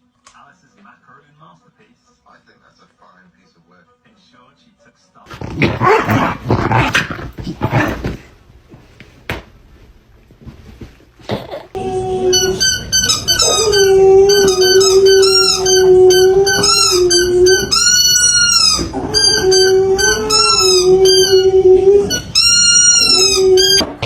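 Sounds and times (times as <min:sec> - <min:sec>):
dog howling: 0:11.8 - 0:24.0.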